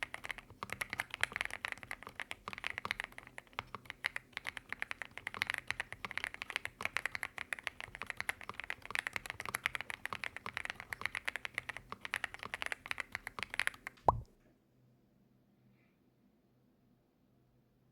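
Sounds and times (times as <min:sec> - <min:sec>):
mechanical keyboard typing: 0:00.0 - 0:14.2.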